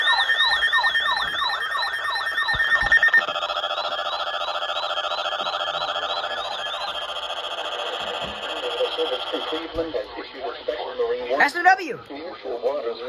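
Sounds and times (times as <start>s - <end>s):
steady high tone: 0.0s - 9.7s
yelping siren sweeps: 0.0s - 9.7s.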